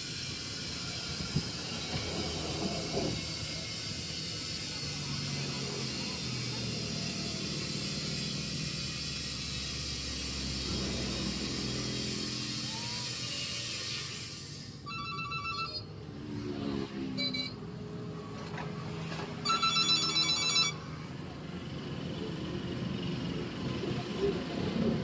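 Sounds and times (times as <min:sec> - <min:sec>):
electronic trilling tone: 0:14.8 - 0:15.9.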